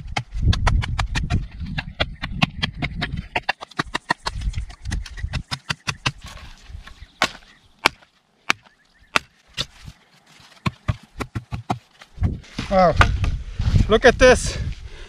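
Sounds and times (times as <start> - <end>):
knife chopping into wood: 0.0 - 6.4, 7.2 - 10.0, 10.6 - 11.9.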